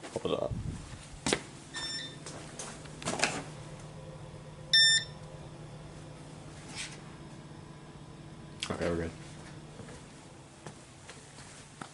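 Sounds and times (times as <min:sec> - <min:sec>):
low steady hum: 0:00.5 - 0:11.9
fire alarm panel beeping: 0:01.7 - 0:03.0, 0:04.7 - 0:05.3.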